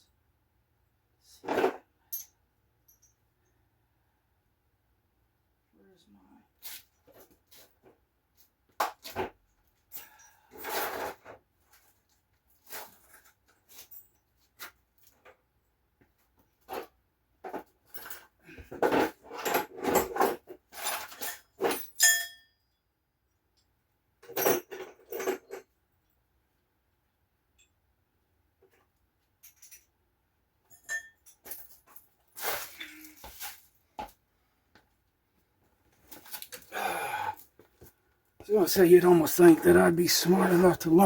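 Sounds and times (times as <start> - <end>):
metal piece ringing: 22.0 - 22.6.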